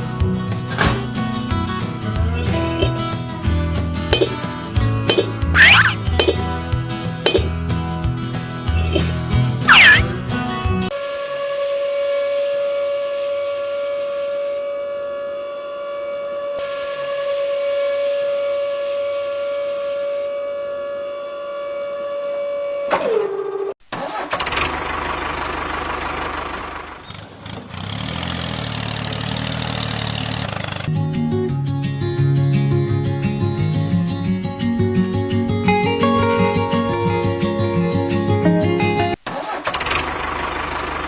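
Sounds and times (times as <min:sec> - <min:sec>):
rough noisy motor: 0:01.8 - 0:03.2, 0:24.3 - 0:30.9.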